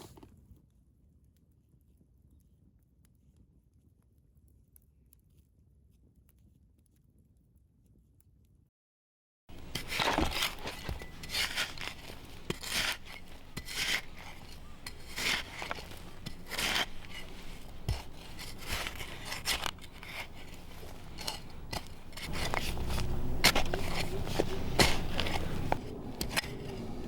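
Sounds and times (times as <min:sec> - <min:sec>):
utensils scraping and clinking: 0:09.5 - 0:27.0.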